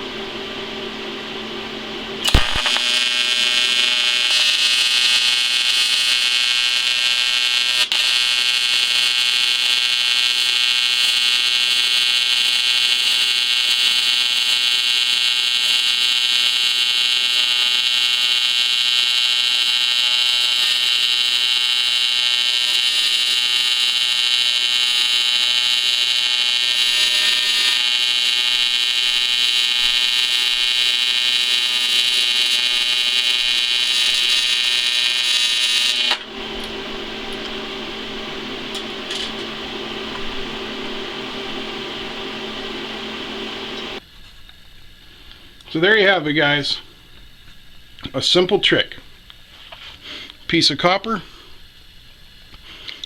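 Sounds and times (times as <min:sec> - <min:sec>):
welding arc buzzing: 0:00.0 - 0:44.0
welding arc striking crack: 0:02.2 - 0:44.0.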